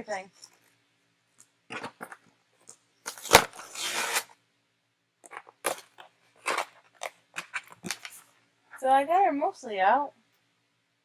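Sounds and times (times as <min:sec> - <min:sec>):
packaging crinkling rustle: 0:05.3 - 0:08.4.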